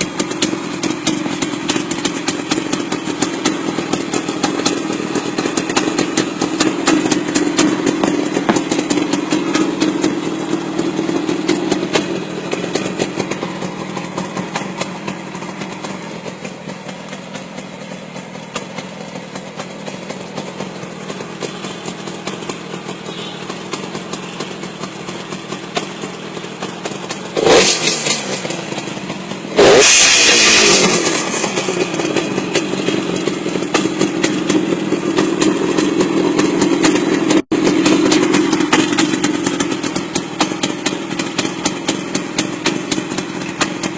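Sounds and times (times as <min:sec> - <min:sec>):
motorcycle engine idling: 0:00.0 - 0:43.9
loud engine bursts: 0:27.2 - 0:34.8.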